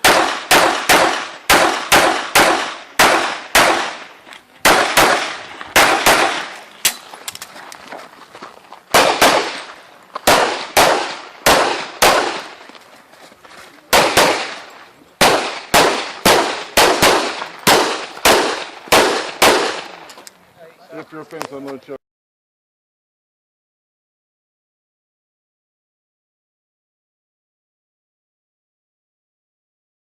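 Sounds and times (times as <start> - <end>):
pistol shots with echo: 0.0 - 7.0, 8.9 - 12.6, 13.9 - 20.1.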